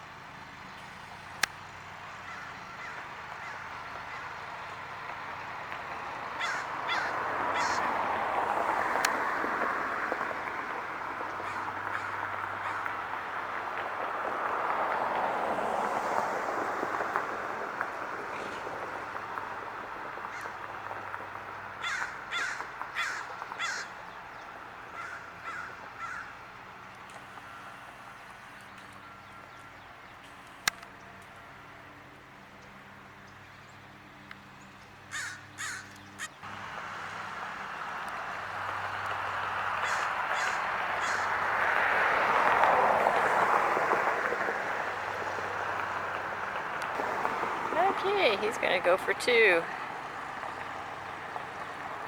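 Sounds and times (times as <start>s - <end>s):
crow cawing: 2.2s - 4.4s, 6.4s - 8.1s, 11.4s - 13.0s, 20.2s - 20.6s, 21.8s - 24.0s, 24.9s - 26.4s, 35.1s - 36.4s, 39.8s - 41.5s.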